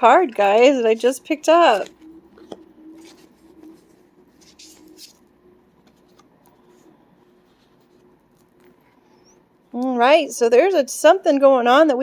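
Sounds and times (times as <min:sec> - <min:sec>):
faint steady hum: 0:00.0 - 0:12.0
cards rustling and sliding: 0:01.7 - 0:08.8.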